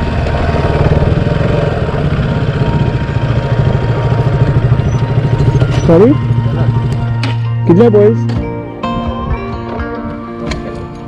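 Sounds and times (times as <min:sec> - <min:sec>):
motorcycle engine running: 0:00.0 - 0:08.6.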